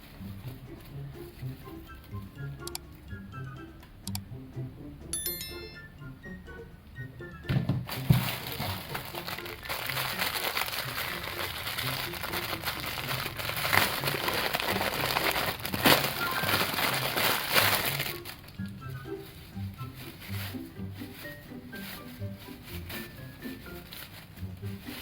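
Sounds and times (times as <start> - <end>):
plastic packaging crinkling: 7.9 - 25.0.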